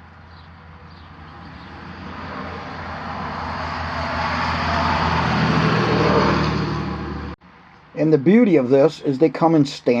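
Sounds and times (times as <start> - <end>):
approaching vehicle engine: 0.0 - 7.4.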